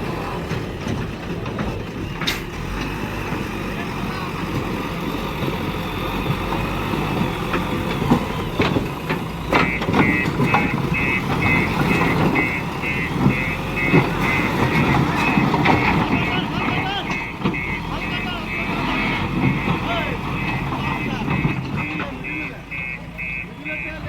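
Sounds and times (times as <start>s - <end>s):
diesel engine running: 0.0s - 24.0s
reversing alarm beeping: 9.5s - 24.0s.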